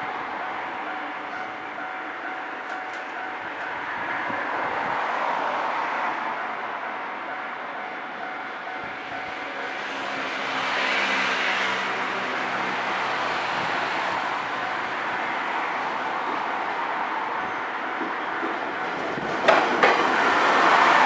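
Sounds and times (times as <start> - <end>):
train running past: 0.0 - 21.0.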